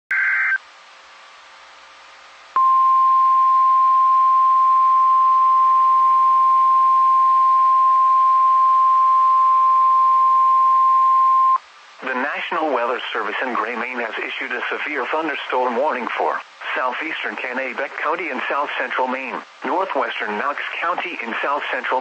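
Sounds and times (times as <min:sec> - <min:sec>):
radio hiss: 0:11.4 - 0:22.0.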